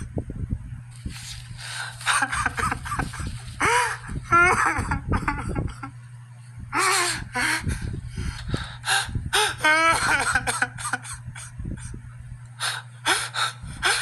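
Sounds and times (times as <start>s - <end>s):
low steady hum: 0.0s - 14.0s
person sobbing and gasping: 1.8s - 5.9s, 6.7s - 8.0s, 8.7s - 12.0s, 12.7s - 14.0s.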